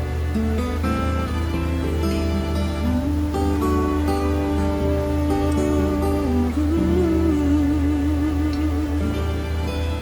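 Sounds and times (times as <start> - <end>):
slow tender music: 0.0 - 10.0
held wavering note: 0.6 - 10.0.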